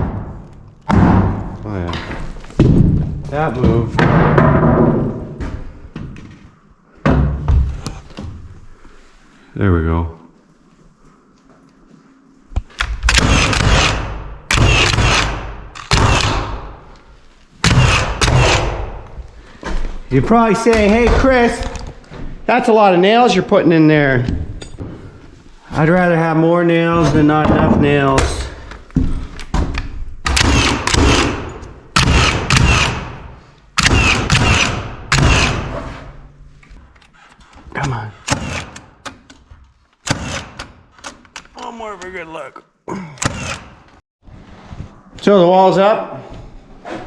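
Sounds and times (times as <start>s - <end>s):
pneumatic nailer firing nails: 12.8s - 16.8s, 17.6s - 19.0s, 30.2s - 36.0s, 38.3s - 39.2s, 40.0s - 40.8s, 43.2s - 43.9s.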